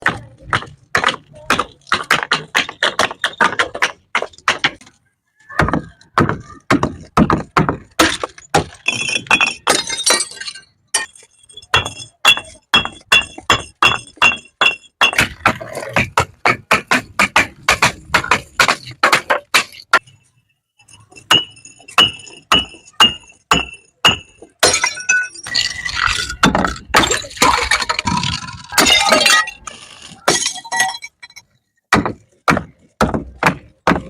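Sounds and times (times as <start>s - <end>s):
glass bottles clinking on stairs: 6.9s - 16.1s, 20.8s - 31.5s
glass shattering: 8.1s - 15.2s, 21.2s - 31.5s.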